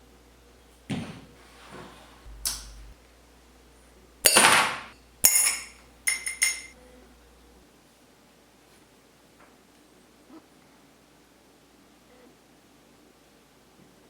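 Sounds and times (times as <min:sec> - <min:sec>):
glass and hard objects clinking: 0:04.3 - 0:06.8.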